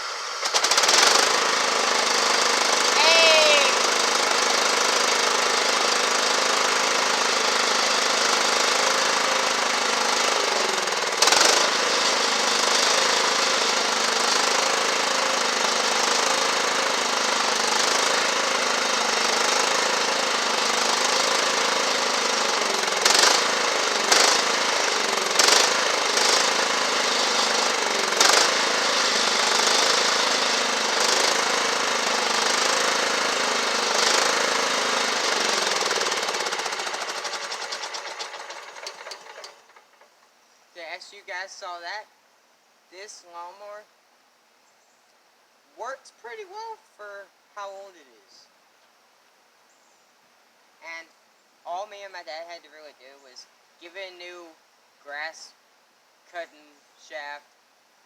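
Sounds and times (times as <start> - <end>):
lawn mower engine running: 0.0 - 40.3.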